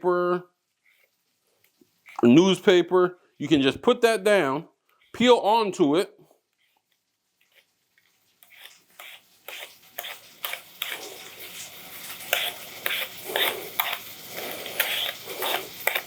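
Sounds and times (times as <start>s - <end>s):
vegetable peeler scraping potato: 7.4s - 16.0s.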